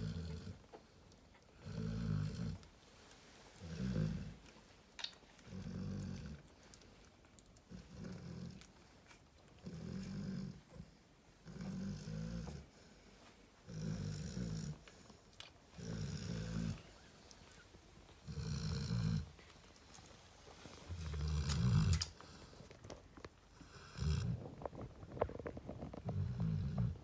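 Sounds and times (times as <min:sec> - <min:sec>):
dog snoring: 0:00.0 - 0:00.6, 0:01.6 - 0:02.6, 0:03.6 - 0:04.4, 0:09.6 - 0:12.8, 0:13.7 - 0:14.9, 0:15.8 - 0:17.0, 0:18.2 - 0:19.3, 0:20.9 - 0:22.5, 0:23.6 - 0:24.5, 0:26.0 - 0:27.0.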